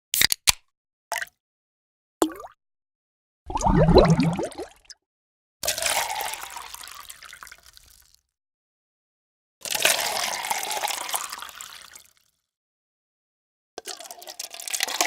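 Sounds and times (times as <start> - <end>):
water pouring into a glass: 3.5 - 4.8, 5.7 - 8.1, 9.6 - 12.2, 13.8 - 15.0.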